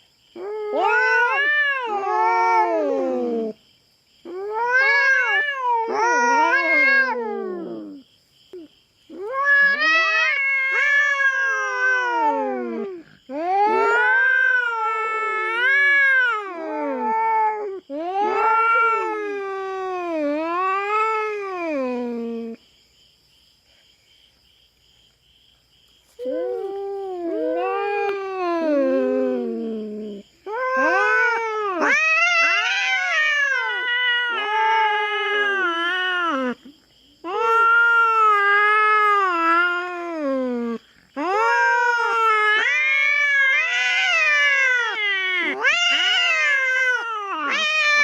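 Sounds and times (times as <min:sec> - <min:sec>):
cats yowling: 0:00.4 - 0:03.6, 0:04.3 - 0:08.0, 0:08.6 - 0:22.6, 0:26.2 - 0:48.0.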